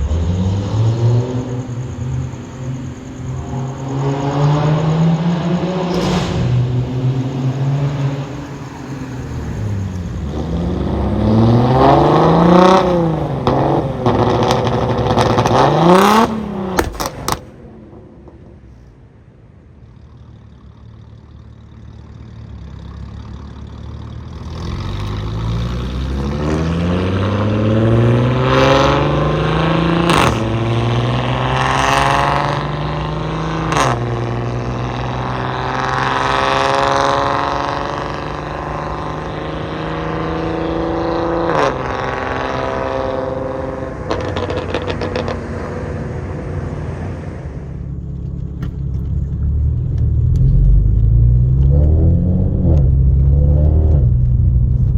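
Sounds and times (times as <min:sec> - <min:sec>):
car exhaust accelerating: 0:00.0 - 0:18.8, 0:20.0 - 0:54.9
exhaust cracks: 0:05.4 - 0:18.8, 0:29.3 - 0:32.4, 0:43.3 - 0:54.9.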